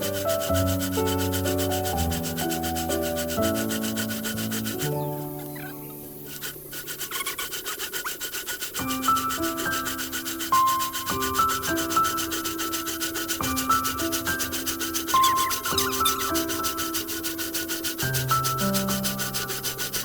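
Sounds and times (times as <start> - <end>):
background music with simple melody: 0.0 - 6.4
hand saw rasping strokes: 0.0 - 20.0.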